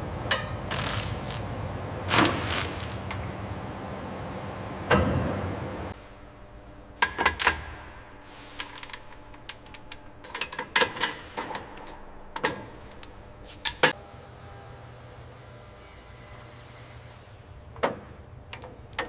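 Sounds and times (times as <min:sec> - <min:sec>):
steady low hum: 0:00.0 - 0:17.8
metal tools clinking: 0:07.0 - 0:13.9.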